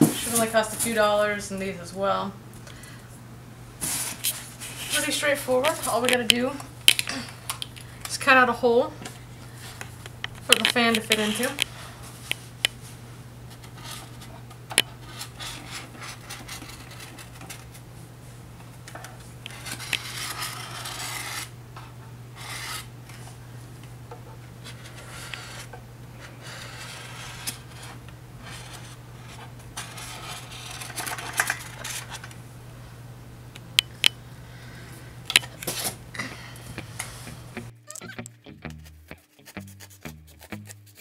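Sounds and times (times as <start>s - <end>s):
steady low hum: 0.0s - 41.0s
blade sawing styrofoam: 19.5s - 21.5s, 22.4s - 22.9s, 24.7s - 25.7s, 26.3s - 29.0s.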